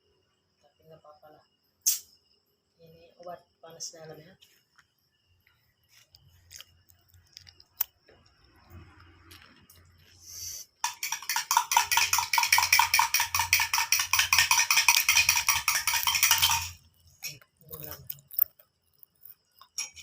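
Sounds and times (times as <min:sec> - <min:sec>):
short hiss: 0:10.2 - 0:10.8
spoon clinking in a glass: 0:10.8 - 0:17.4.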